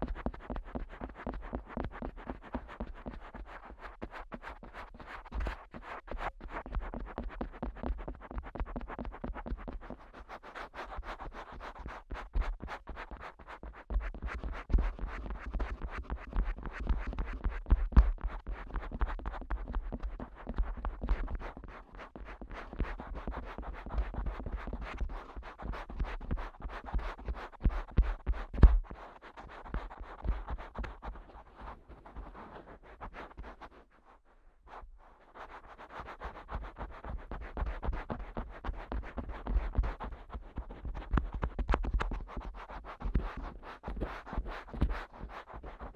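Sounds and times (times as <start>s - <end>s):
fingers tapping on microphone: 40.9s - 43.3s.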